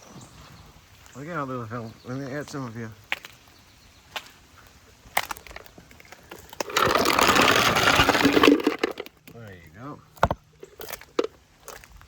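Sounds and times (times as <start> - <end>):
feed pieces pouring and rattling: 6.6 - 9.1.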